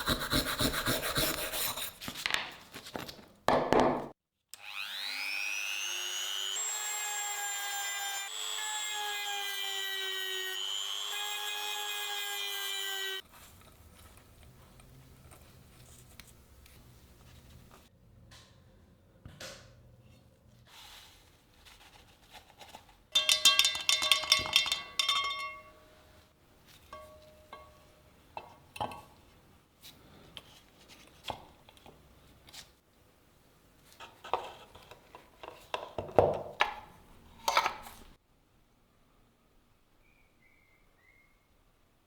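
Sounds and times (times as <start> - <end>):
metal tools clinking: 23.2 - 26.1, 26.8 - 28.0
ringing metallic scrape: 23.2 - 26.2, 26.9 - 28.0.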